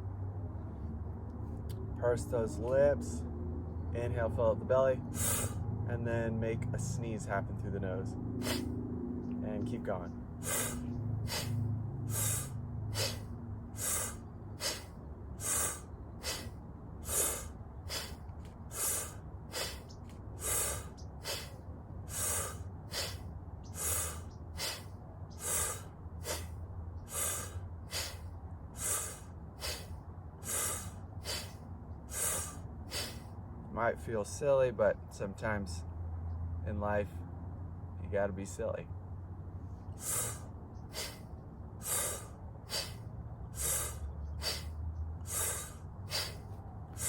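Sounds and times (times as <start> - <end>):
rapid rhythmic breathing: 5.0 - 5.7, 8.4 - 8.8, 10.3 - 33.4, 39.7 - 47.0.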